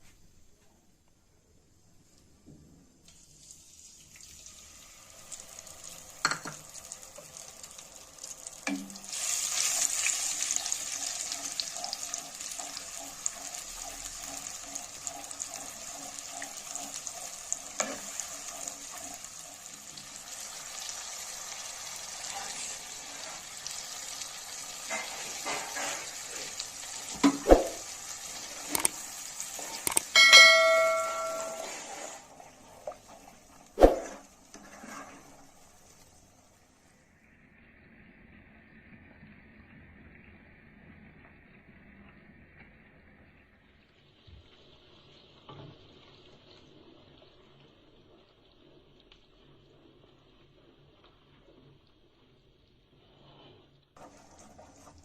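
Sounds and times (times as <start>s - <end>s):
food sizzling in a pan: 2.0s - 55.0s
short ringing tone: 30.2s - 31.9s.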